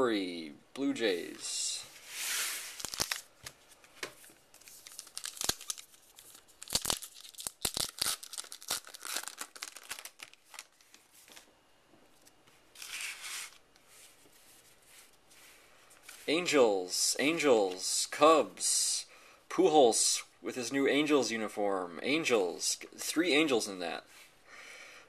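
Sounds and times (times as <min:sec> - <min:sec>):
wrapper rustling: 0:02.3 - 0:11.5
wrapper tearing and crinkling: 0:02.6 - 0:03.3, 0:04.6 - 0:11.0.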